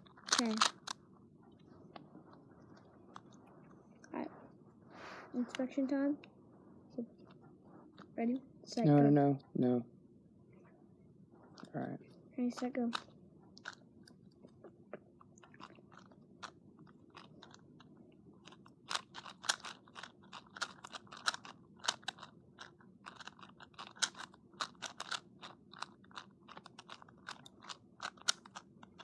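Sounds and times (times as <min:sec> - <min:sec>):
puzzle cube clicking: 0:00.2 - 0:01.0, 0:18.4 - 0:29.0.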